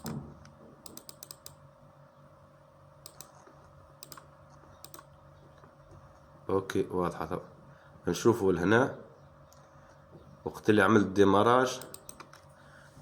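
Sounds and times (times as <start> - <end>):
low steady hum: 0.0 - 13.0
faint mouse clicks: 3.0 - 5.1.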